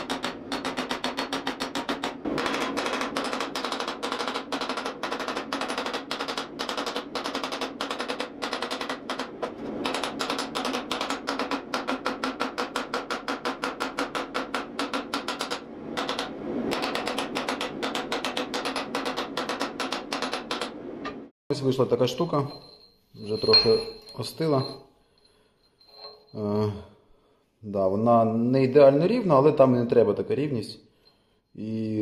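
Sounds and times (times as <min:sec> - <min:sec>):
power hammer striking steel: 0:00.0 - 0:20.6.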